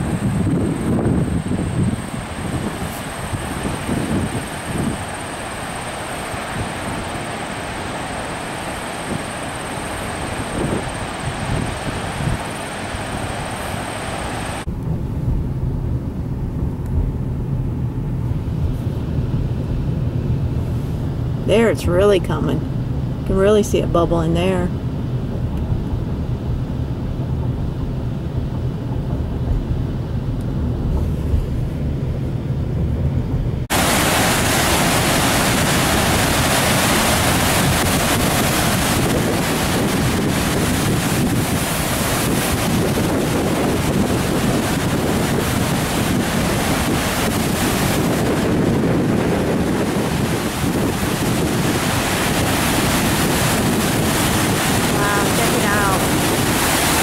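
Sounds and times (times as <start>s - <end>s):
water rushing and churning: 0.0s - 14.7s, 17.9s - 57.0s
wind buffeting microphone: 0.0s - 57.0s.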